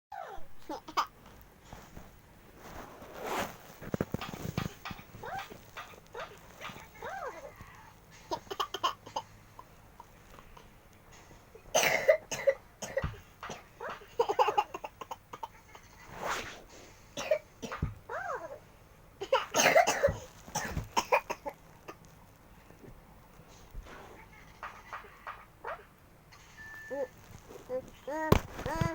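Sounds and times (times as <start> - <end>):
person coughing: 11.8 - 13.2, 19.2 - 21.5.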